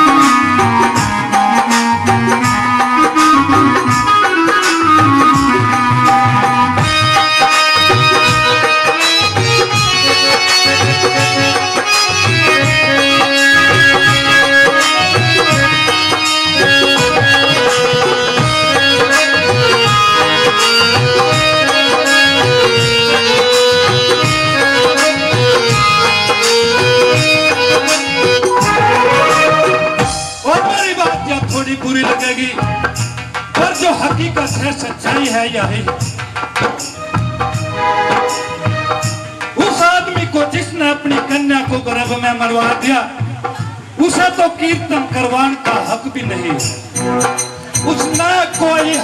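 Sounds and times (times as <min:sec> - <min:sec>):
instrumental folk melody: 0:00.0 - 0:34.5, 0:35.8 - 0:40.3, 0:46.2 - 0:49.0
hand drum rhythm: 0:00.0 - 0:49.0.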